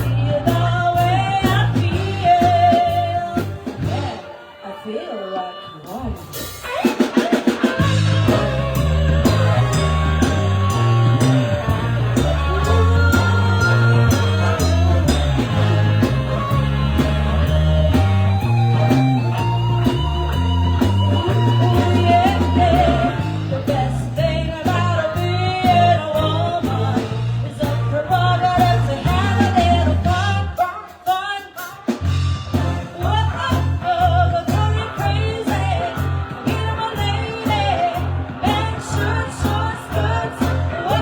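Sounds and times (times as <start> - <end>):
person singing: 0.0 - 31.8
live band music: 0.0 - 41.0.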